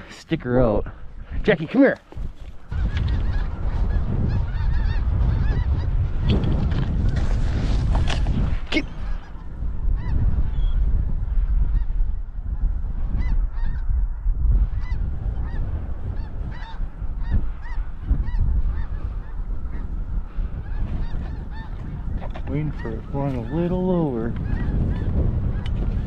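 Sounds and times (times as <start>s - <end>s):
wind rumble on microphone: 0.0s - 26.0s
geese honking: 2.7s - 6.0s, 9.0s - 10.2s, 14.7s - 25.8s.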